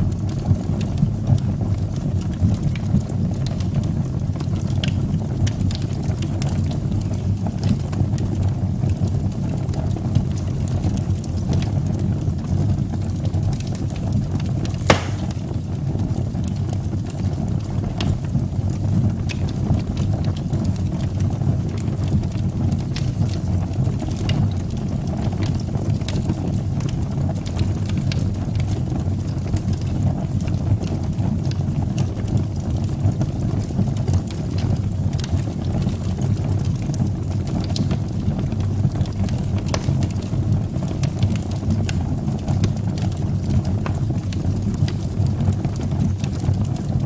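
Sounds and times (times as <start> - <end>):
fire crackles and pops: 0.0 - 47.0
fire rumbling: 0.0 - 47.0.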